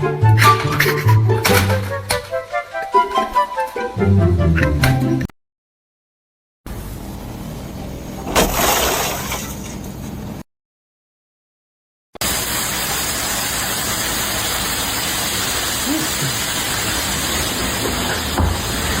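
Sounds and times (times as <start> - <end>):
steady rushing hiss: 12.3 - 19.0
loud crash: 16.6 - 19.0.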